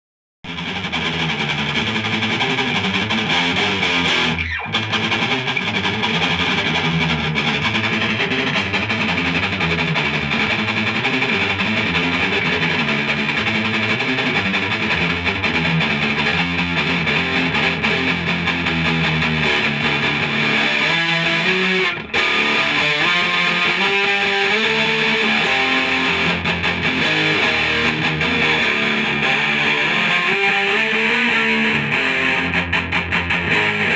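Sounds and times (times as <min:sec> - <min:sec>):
distorted electric guitar riffing: 0:00.5 - 0:33.9.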